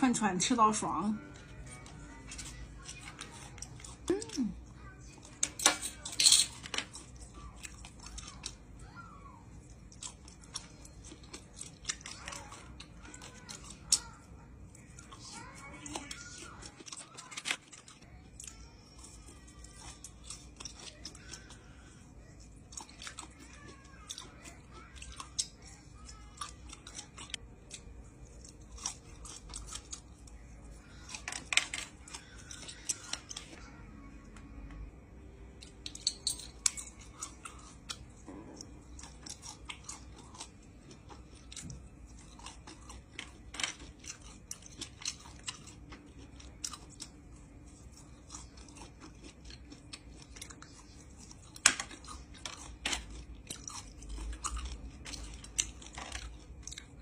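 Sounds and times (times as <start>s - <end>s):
person chewing and biting: 9.6s - 14.1s, 22.4s - 33.5s, 36.6s - 57.0s.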